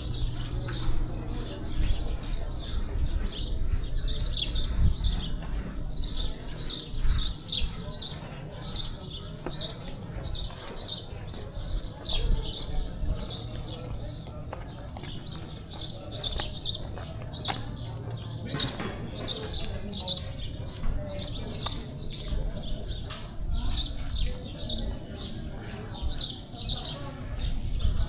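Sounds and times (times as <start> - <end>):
small birds chirping: 0.0 - 28.0.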